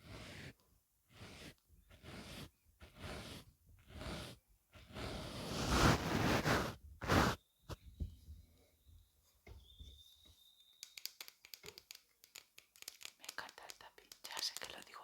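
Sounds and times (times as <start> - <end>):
brush sweeping across microphone: 0.0 - 0.5, 1.1 - 7.4.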